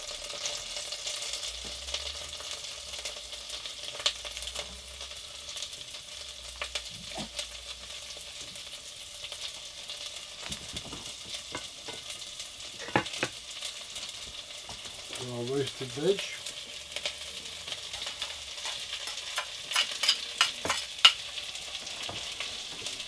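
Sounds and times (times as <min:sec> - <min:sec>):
vegetables sizzling in a pan: 0:00.0 - 0:23.0
utensil scraping a pan: 0:10.4 - 0:13.4, 0:17.0 - 0:23.0.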